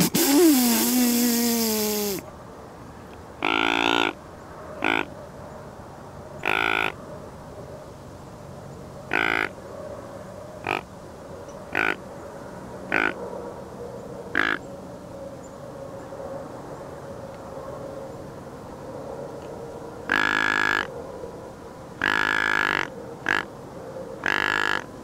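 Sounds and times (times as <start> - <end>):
deer grunting: 3.4 - 4.2, 9.1 - 9.5.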